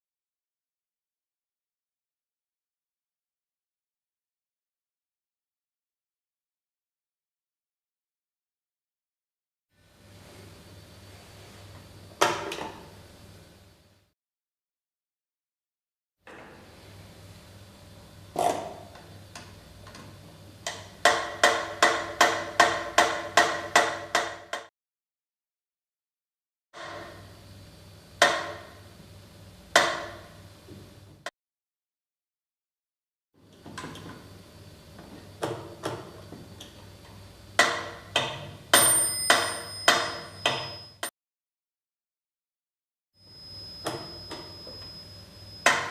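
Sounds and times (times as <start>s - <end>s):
metronome bell ringing: 38.8s - 41.0s.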